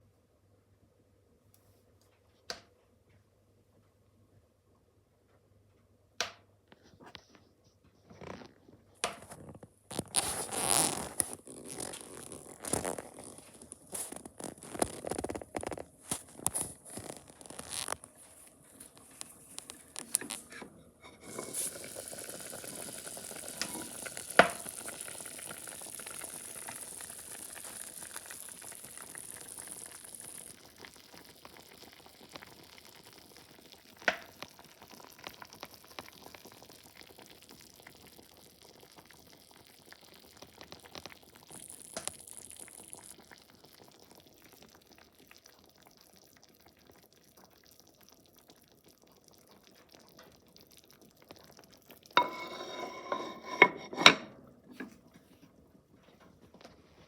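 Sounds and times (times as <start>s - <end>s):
food sizzling and bubbling: 8.1s - 57.0s.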